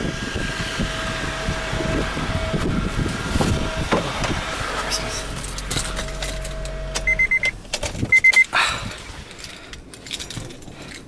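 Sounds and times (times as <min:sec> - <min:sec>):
car engine idling: 0:00.0 - 0:10.2
keys jangling: 0:05.1 - 0:11.0
short high car beeps: 0:05.5 - 0:08.5.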